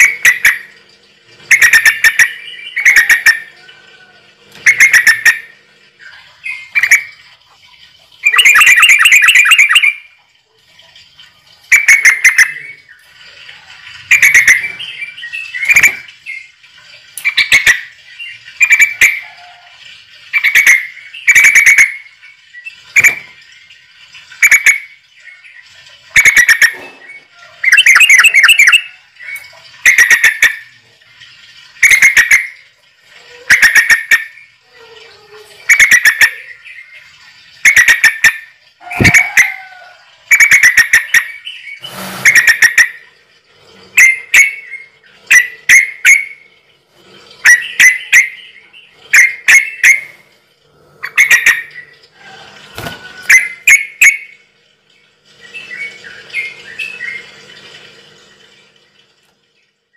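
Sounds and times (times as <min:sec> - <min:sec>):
bird chattering calls: 0:01.5 - 0:03.5, 0:04.7 - 0:05.5, 0:08.2 - 0:10.0, 0:37.6 - 0:43.0, 0:51.0 - 0:51.9.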